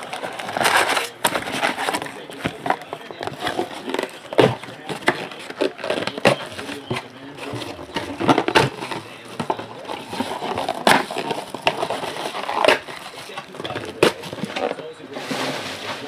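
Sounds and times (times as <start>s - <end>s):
crinkling plastic wrapper: 0.0s - 15.0s
card packs being torn open: 0.0s - 15.1s.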